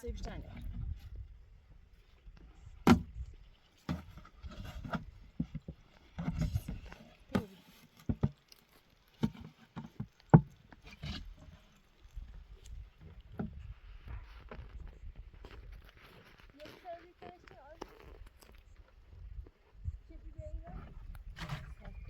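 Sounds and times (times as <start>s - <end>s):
knocks and thumps: 2.8s - 3.3s.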